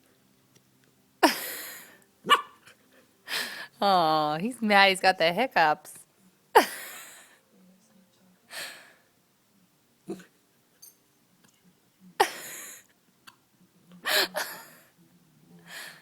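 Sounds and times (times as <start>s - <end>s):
puppy hiccupping: 2.3s - 2.6s.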